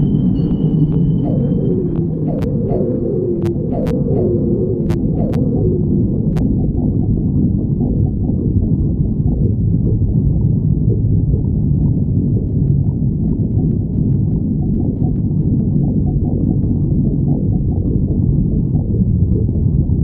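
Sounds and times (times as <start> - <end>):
stomach growling: 0.0 - 20.0.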